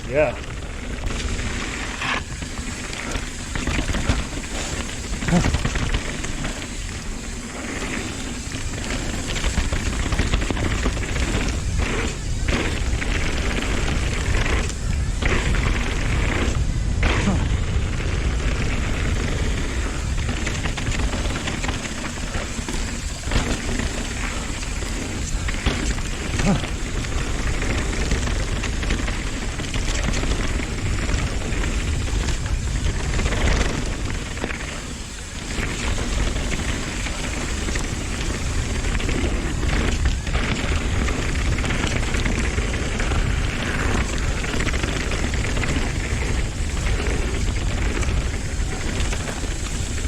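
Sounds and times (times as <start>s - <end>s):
deep rumble: 0.0s - 34.7s
tyre noise on dirt: 0.0s - 50.0s
wind rush: 0.0s - 50.0s.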